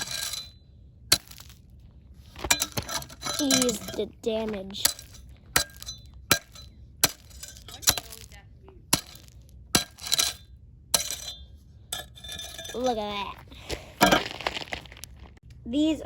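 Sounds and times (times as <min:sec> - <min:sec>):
glass lenses clinking and cracking: 0:04.8 - 0:08.4.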